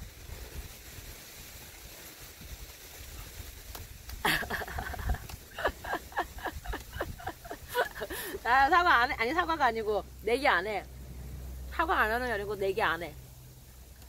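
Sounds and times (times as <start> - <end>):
low wind rumble: 0.0 - 14.0
woman laughing: 4.2 - 9.1.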